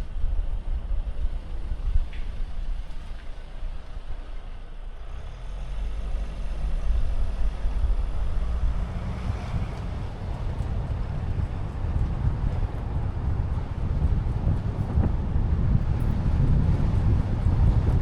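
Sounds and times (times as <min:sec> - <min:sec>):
wind noise: 0:00.0 - 0:04.4, 0:05.1 - 0:18.0
car engine rumble: 0:00.0 - 0:18.0.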